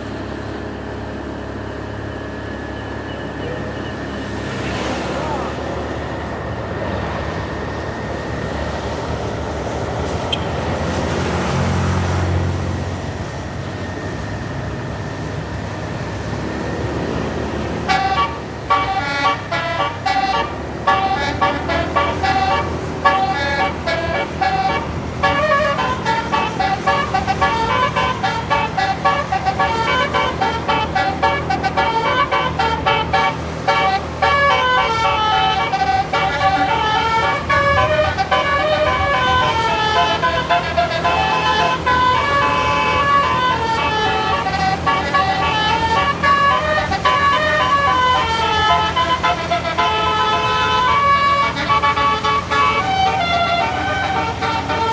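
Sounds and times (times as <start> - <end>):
bus engine: 0.0 - 54.9
road noise: 0.0 - 54.9
multi-tone horn playing a tune: 15.2 - 54.9.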